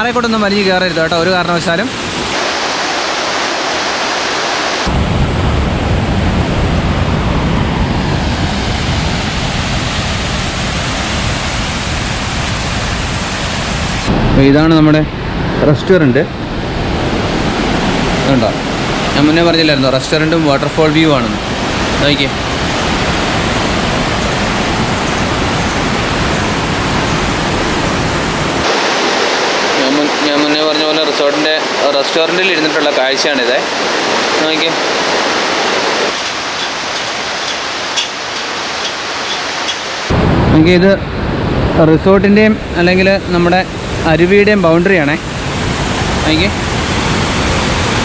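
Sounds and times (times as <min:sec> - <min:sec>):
waterfall rushing over rock: 0:00.0 - 0:05.0, 0:17.2 - 0:40.2, 0:42.8 - 0:48.0.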